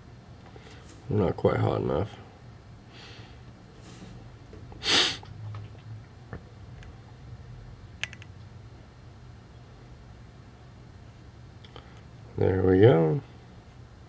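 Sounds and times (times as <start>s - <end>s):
low steady hum: 0.0s - 14.0s
person sniffing: 4.8s - 5.3s.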